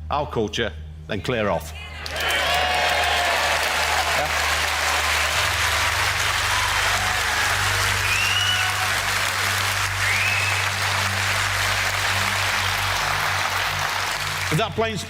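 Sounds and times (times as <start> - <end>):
audience applauding: 2.0 - 14.9
short whistles: 8.0 - 8.8, 10.0 - 10.6.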